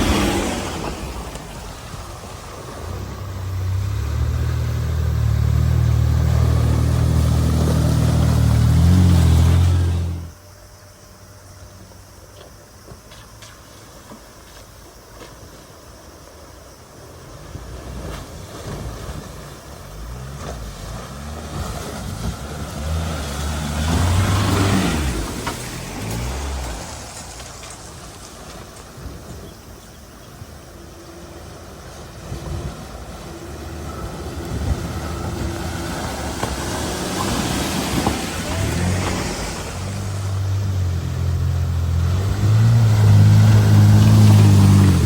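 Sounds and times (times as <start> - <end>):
vehicle engine running under load: 0.0 - 10.4, 31.1 - 45.0.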